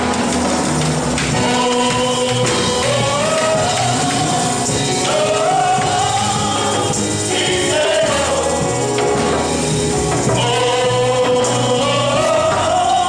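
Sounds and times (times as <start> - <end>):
congregation singing gospel song: 0.0 - 13.0
tambourine beat: 0.0 - 13.0.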